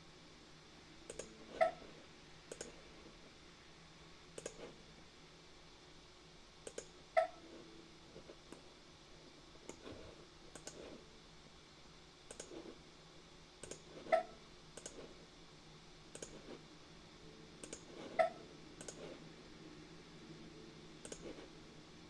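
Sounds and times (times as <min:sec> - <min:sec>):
computer mouse clicking: 0:01.1 - 0:01.4, 0:02.5 - 0:02.8, 0:04.4 - 0:04.8, 0:06.6 - 0:07.0, 0:08.5 - 0:08.7, 0:09.6 - 0:11.0, 0:12.3 - 0:12.7, 0:13.6 - 0:13.9, 0:14.8 - 0:15.1, 0:16.1 - 0:16.6, 0:17.6 - 0:18.1, 0:18.8 - 0:19.2, 0:21.0 - 0:21.5.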